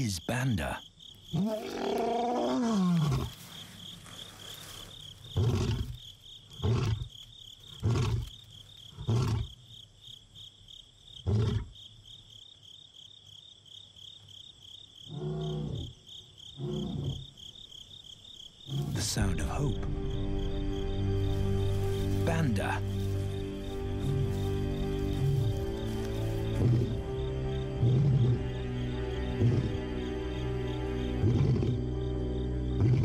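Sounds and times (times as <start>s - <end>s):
lion roaring: 1.3s - 3.4s, 16.6s - 17.3s.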